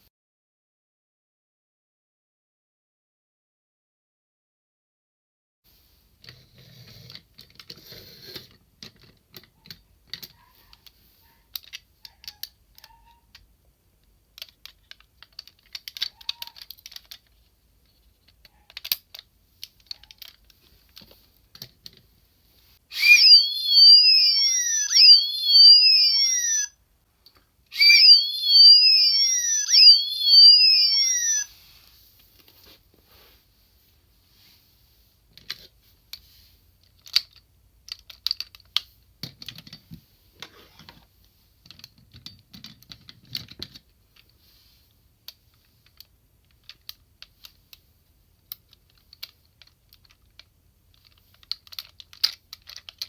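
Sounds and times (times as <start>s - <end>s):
plastic toy clicks and taps: 7.1s - 17.4s, 36.9s - 40.5s, 48.5s - 53.0s
electronic toy siren: 22.9s - 26.7s, 27.8s - 31.5s.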